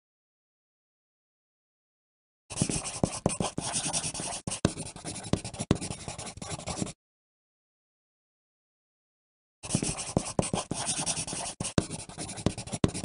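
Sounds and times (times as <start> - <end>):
pencil writing on paper: 2.5 - 7.0, 9.6 - 13.0.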